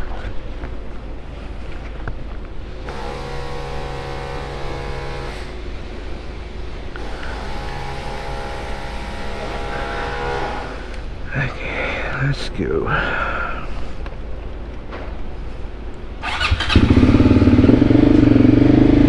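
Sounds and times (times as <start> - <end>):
steady whine: 0.0 - 19.0
motorcycle engine rumble: 13.7 - 19.0.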